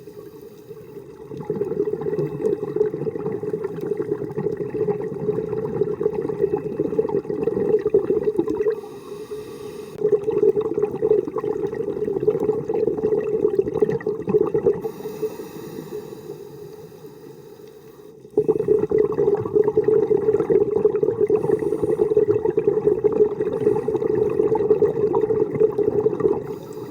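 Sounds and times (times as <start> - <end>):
scuba regulator breathing: 0.0 - 1.1, 8.7 - 10.0, 14.8 - 18.8, 21.3 - 22.4, 23.4 - 24.7, 26.4 - 26.9
exhaled bubbles gurgling: 0.0 - 17.1, 18.2 - 26.9.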